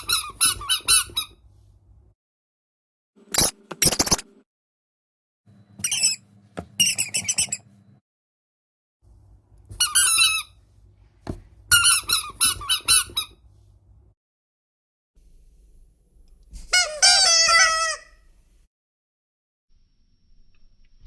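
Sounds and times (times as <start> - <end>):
rubber duck toys squeaking: 0.0 - 1.4, 5.8 - 6.2, 6.8 - 7.7, 9.7 - 10.6, 11.7 - 13.4, 16.7 - 18.2.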